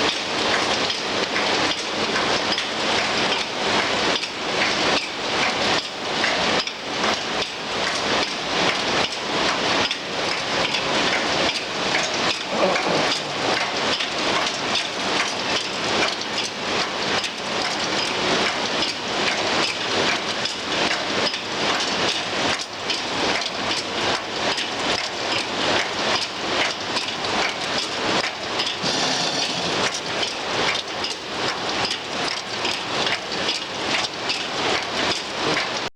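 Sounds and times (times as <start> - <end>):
cutting machine clattering: 28.7 - 30.4.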